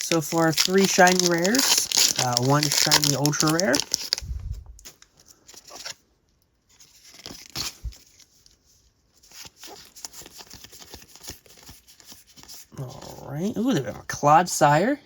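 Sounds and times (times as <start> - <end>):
foil wrapper tearing and crinkling: 0.0 - 6.0, 6.8 - 8.5, 9.2 - 12.7.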